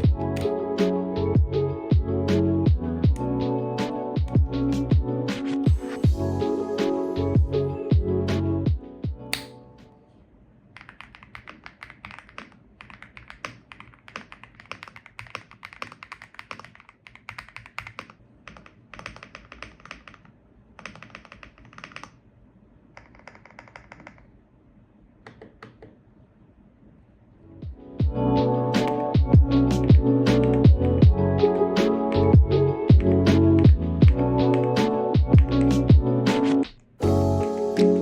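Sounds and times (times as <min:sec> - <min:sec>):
mechanical keyboard typing: 0:10.8 - 0:22.2, 0:23.0 - 0:24.3, 0:29.8 - 0:30.9.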